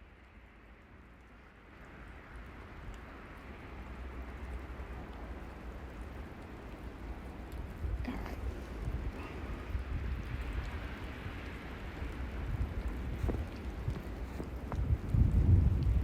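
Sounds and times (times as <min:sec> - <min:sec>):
wind buffeting microphone: 0:05.3 - 0:16.0.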